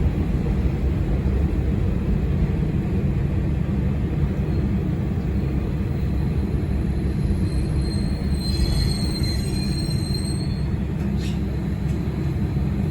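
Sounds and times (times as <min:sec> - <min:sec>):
diesel railcar rumbling: 0:00.0 - 0:12.9
high wheel squeal: 0:07.2 - 0:11.4.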